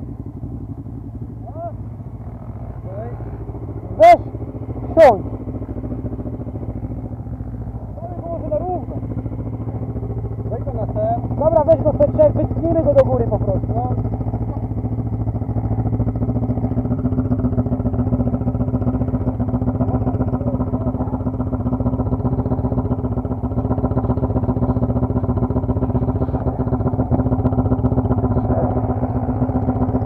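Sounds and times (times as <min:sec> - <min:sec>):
quad bike engine running: 0:00.0 - 0:30.0.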